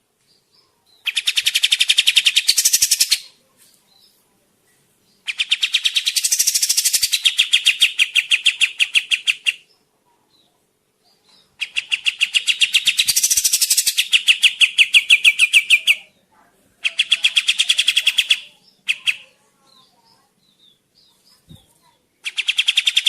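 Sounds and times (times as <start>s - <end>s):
bird singing rapid trills: 1.0s - 3.3s, 5.2s - 9.7s, 11.1s - 16.0s.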